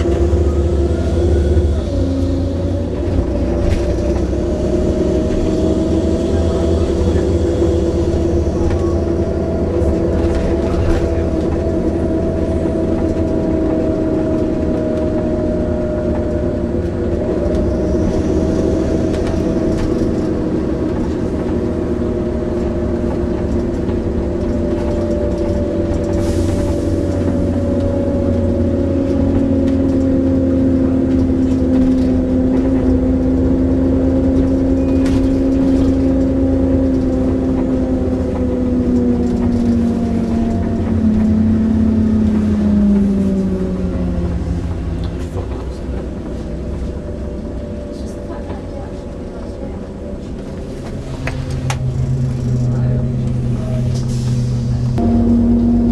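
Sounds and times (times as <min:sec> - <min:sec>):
bus engine whining: 0:00.0 - 0:55.9
lower steady whine: 0:54.7 - 0:55.9.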